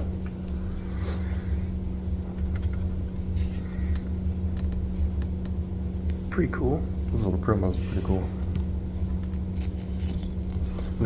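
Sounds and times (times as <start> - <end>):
low hum: 0.0 - 11.0
trading cards clicking and rustling: 8.6 - 11.0.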